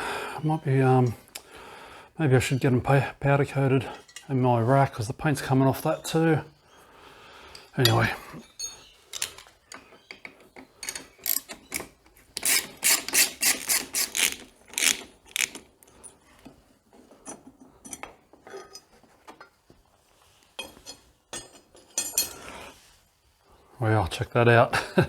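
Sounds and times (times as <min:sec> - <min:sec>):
hand tools clicking on metal: 0:07.5 - 0:16.2.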